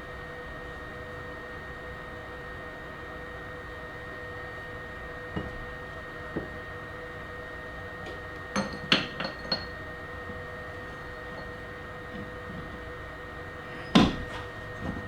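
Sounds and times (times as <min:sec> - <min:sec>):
metal knocks on workbench: 0:08.6 - 0:09.7, 0:13.9 - 0:15.0.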